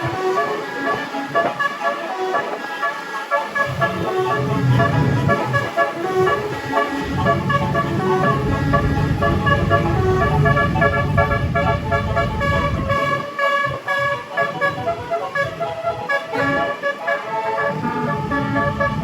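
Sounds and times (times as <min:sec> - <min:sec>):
bus multi-tone horn tune: 0:00.0 - 0:19.0
low rumble: 0:07.1 - 0:13.0.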